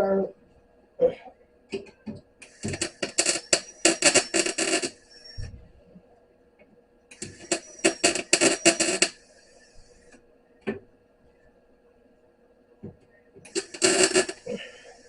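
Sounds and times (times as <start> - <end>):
welder arc crackling: 2.4 - 5.5, 7.1 - 10.2, 13.4 - 15.0.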